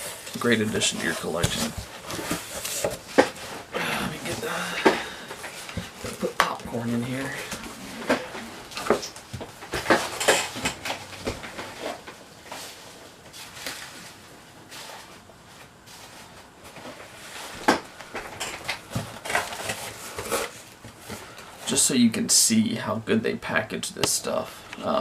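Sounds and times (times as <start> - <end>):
rustling of packing peanuts: 0.0 - 15.1.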